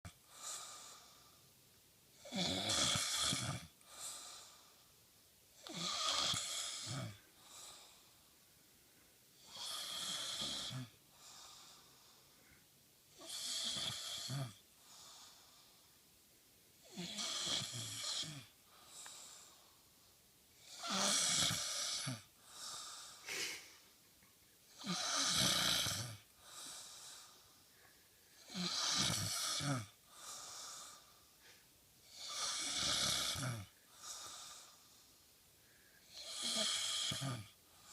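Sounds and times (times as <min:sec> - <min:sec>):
person snoring: 0:02.2 - 0:04.6, 0:05.6 - 0:08.1, 0:09.4 - 0:11.8, 0:13.2 - 0:15.4, 0:16.9 - 0:19.6, 0:20.6 - 0:23.8, 0:24.8 - 0:27.4, 0:28.4 - 0:31.1, 0:32.0 - 0:34.8, 0:36.0 - 0:37.9
short quiet breath: 0:23.2 - 0:23.9.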